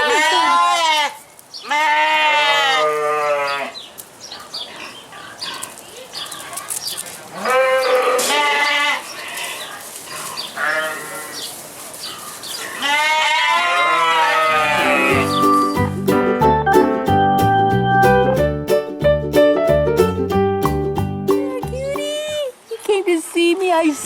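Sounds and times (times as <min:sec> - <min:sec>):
sheep bleating: 0:00.0 - 0:03.8, 0:07.4 - 0:09.7, 0:10.6 - 0:11.5, 0:12.7 - 0:15.7.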